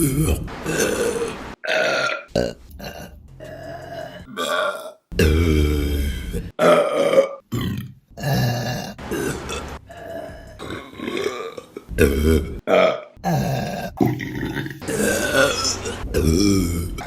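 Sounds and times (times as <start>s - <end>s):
woman burping: 6.6s - 9.7s, 10.6s - 17.0s.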